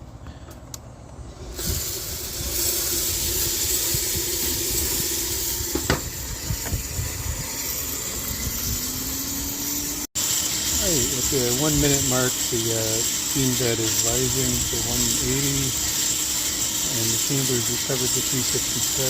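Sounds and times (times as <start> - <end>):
heater fan hissing: 0.0 - 19.0
hum rising in pitch: 1.3 - 11.5.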